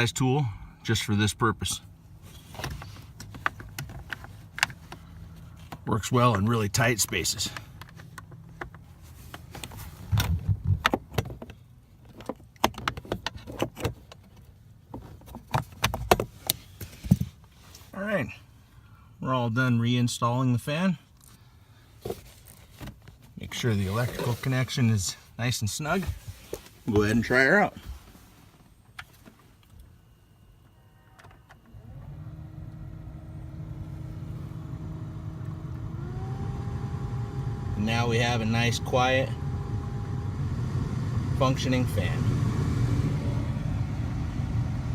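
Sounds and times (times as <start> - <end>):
blower fan motor whirring: 31.6 - 44.9.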